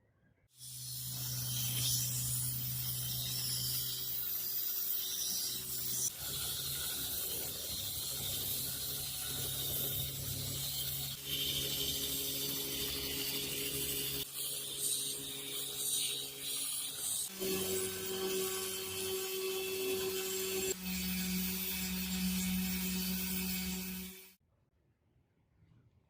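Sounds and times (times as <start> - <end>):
high rasping tool noise: 0.6 - 24.4.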